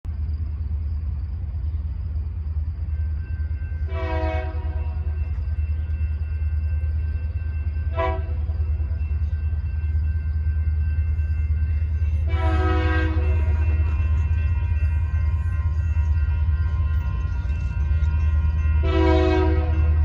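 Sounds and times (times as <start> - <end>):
locomotive air horn blasts: 3.9 - 4.9, 7.9 - 8.4, 12.2 - 13.4, 18.8 - 19.8.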